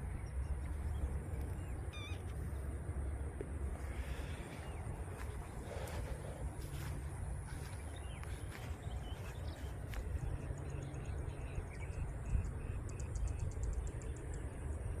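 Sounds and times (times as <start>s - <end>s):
wind rumble on microphone: 0.0s - 15.0s.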